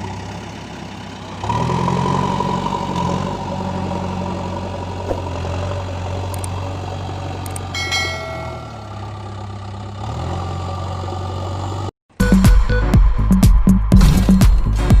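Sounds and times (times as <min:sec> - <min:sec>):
diesel engine idling: 0:00.0 - 0:11.9
metal clang: 0:07.8 - 0:09.1.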